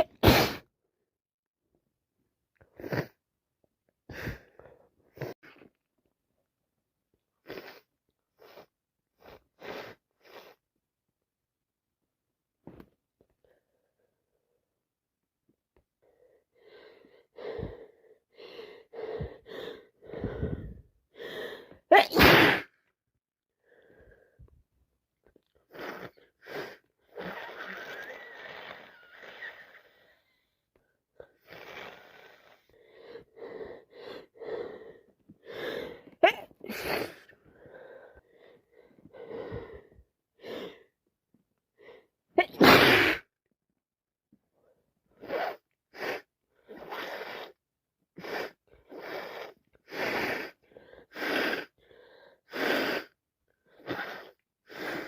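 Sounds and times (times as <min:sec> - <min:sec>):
person sneezing: 0:00.0 - 0:00.7, 0:21.9 - 0:22.7, 0:36.2 - 0:37.3, 0:42.4 - 0:43.3.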